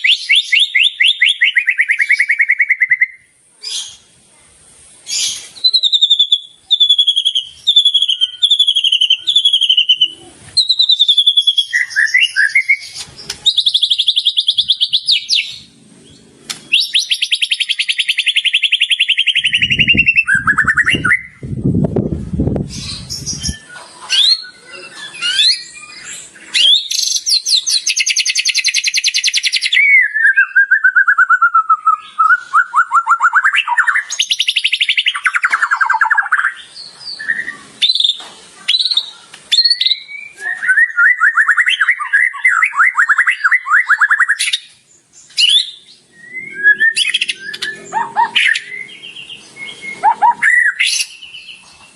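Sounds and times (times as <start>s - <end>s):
songbird singing whistled song: 0.0s - 4.1s, 5.1s - 21.6s, 22.6s - 51.9s
bird buzzy trills: 45.2s - 51.9s.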